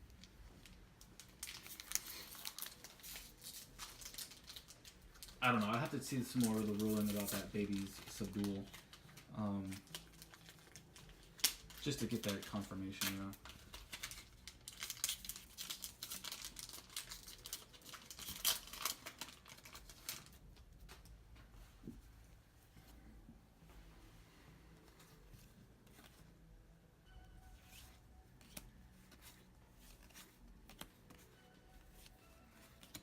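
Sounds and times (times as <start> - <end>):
foil wrappers crinkling: 0.0 - 21.1
faint background music: 0.0 - 33.0.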